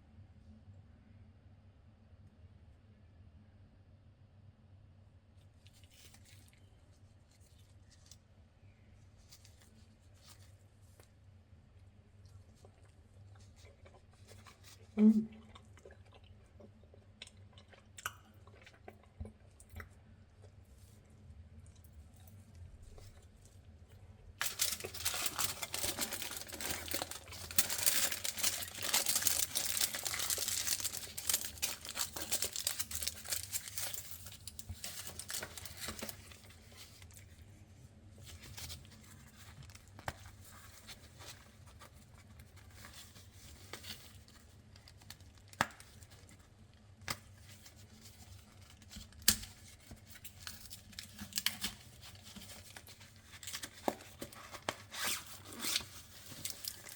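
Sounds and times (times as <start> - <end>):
wrapper tearing and crinkling: 24.4 - 37.3, 38.2 - 46.4, 47.4 - 56.9.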